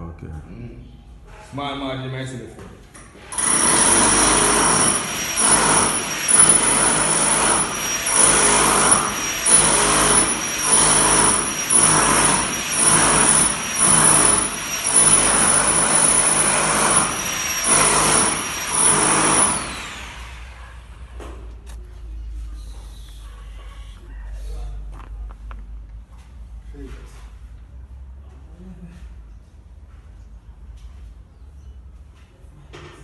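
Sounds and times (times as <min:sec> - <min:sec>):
power tool whining: 0:03.2 - 0:20.8.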